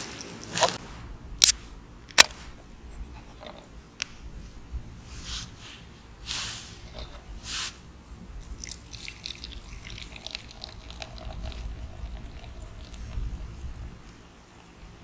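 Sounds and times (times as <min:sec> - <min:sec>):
short hissing puffs: 0:05.0 - 0:08.0.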